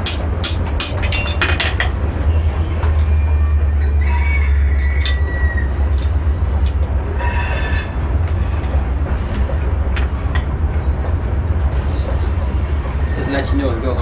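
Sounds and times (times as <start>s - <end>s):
hammer striking metal on anvil: 0.0s - 2.0s
low rumble: 0.0s - 14.0s.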